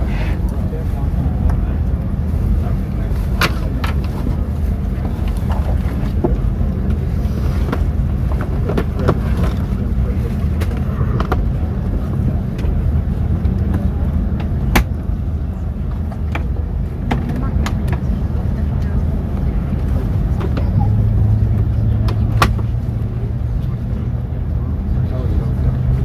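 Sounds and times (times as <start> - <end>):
airliner cabin drone: 0.0 - 26.0.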